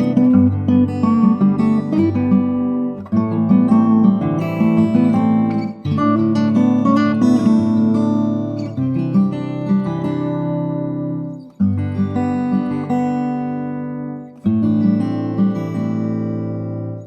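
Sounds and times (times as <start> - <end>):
acoustic guitar strumming chords: 0.0 - 17.0.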